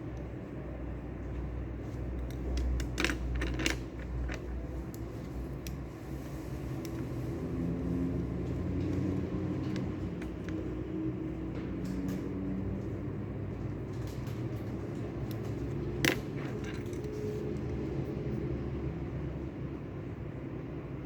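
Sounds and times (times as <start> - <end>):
small clicks and clinks: 2.2 - 5.8, 13.9 - 17.8.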